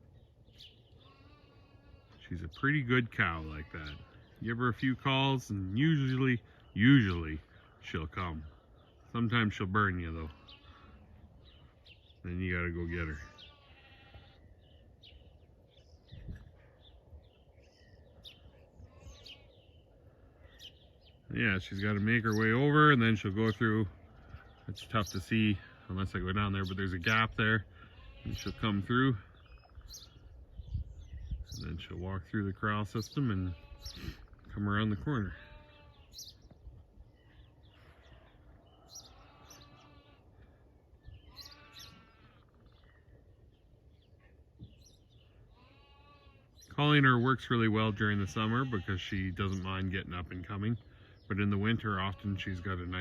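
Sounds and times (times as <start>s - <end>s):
small birds chirping: 0.0s - 53.0s
distant sheep bleating: 0.6s - 15.4s, 16.5s - 30.1s, 32.7s - 36.4s, 37.2s - 42.8s, 45.2s - 47.0s, 47.8s - 53.0s
bird chirps: 35.8s - 40.2s, 41.0s - 48.4s.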